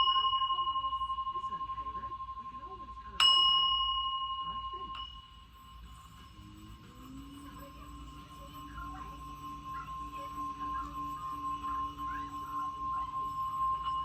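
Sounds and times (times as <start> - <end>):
singing bowl ringing: 0.0 - 14.0.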